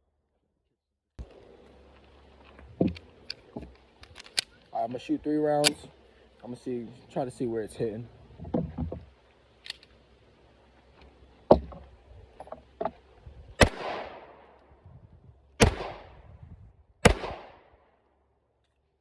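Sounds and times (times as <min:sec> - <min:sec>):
pistol shots with echo: 0:13.6 - 0:14.6, 0:15.6 - 0:16.3, 0:17.0 - 0:17.9
sharp crack: 0:13.6 - 0:14.8, 0:15.6 - 0:16.4, 0:17.0 - 0:18.0.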